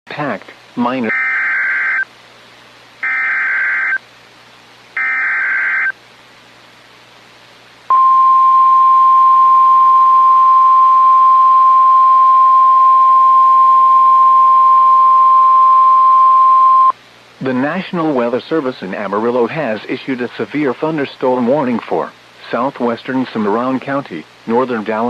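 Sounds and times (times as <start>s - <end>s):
steady warning alarm tone: 1.1s - 2.1s, 3.0s - 4.0s, 5.0s - 6.0s
warbling data bursts: 3.0s - 4.0s, 5.0s - 6.0s.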